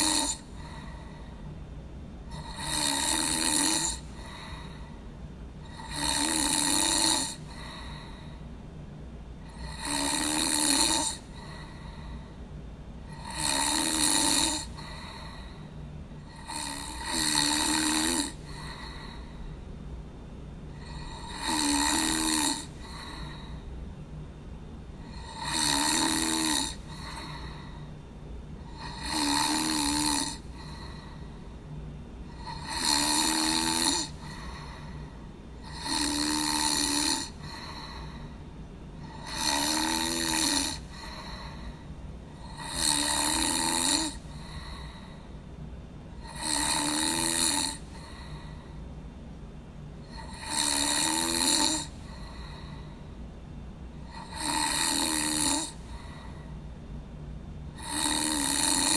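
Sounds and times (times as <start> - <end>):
person snoring: 0.0 - 1.4, 2.3 - 5.0, 5.6 - 8.4, 9.4 - 12.3, 13.1 - 19.5, 20.8 - 23.7, 25.0 - 27.9, 28.6 - 31.4, 32.3 - 38.4, 39.0 - 45.2, 46.2 - 48.7, 50.0 - 53.0, 54.0 - 56.4, 57.8 - 58.9.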